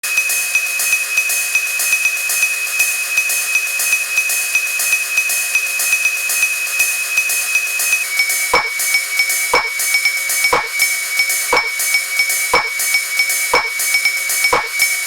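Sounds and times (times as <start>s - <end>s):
steady high-pitched tone: 8.5s - 8.9s, 9.6s - 9.8s, 10.5s - 10.9s, 11.5s - 11.9s, 12.6s - 12.8s, 13.6s - 13.8s, 14.5s - 14.9s.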